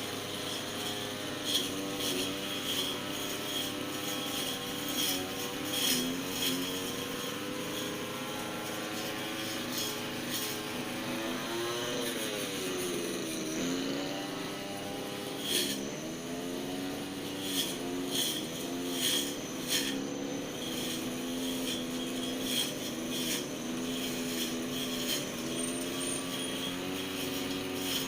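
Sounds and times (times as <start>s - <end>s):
brush cutter engine running: 0.0s - 28.0s.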